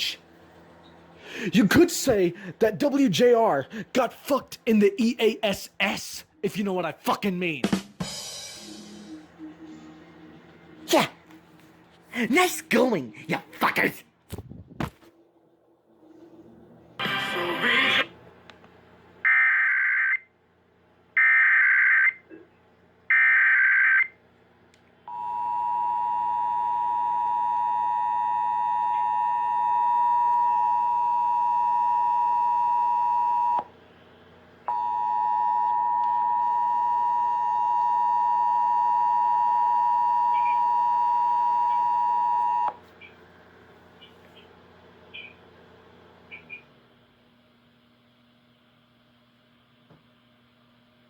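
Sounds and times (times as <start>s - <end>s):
two-tone attention signal: 8.6s - 10.8s.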